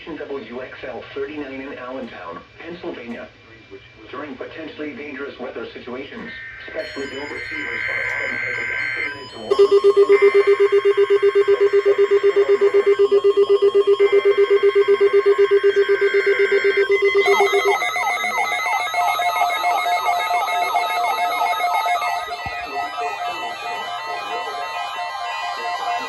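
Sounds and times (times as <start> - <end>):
electronic chirps: 6.3 - 26.0
electronic ringing tones: 6.4 - 26.0.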